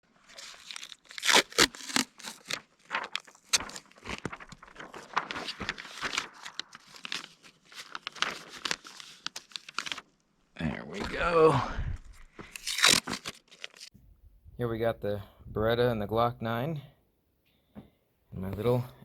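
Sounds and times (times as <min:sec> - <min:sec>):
gear rustling and crinkling: 0:00.2 - 0:10.1, 0:12.1 - 0:13.9.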